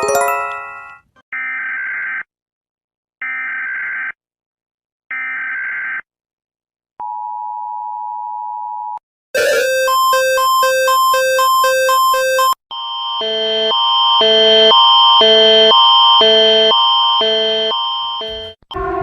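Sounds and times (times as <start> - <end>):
two-tone alert signal: 9.4 - 12.6, 15.2 - 19.0
alarm with pulsing beeps: 9.4 - 19.0.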